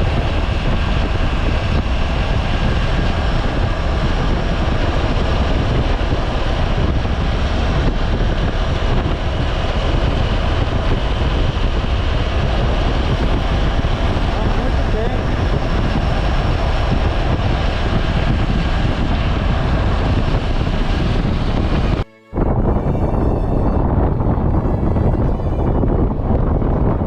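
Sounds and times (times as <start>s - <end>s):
wind and road noise: 0.0s - 27.0s.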